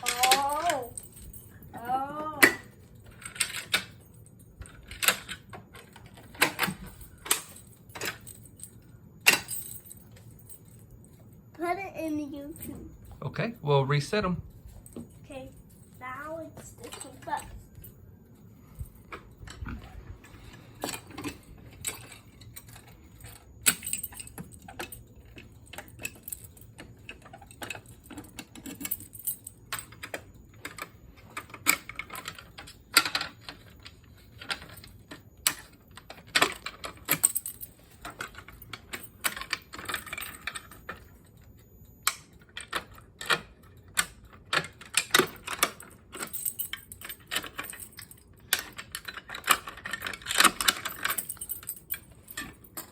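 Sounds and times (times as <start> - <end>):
fire alarm pull station clicks: 23.6 - 52.9.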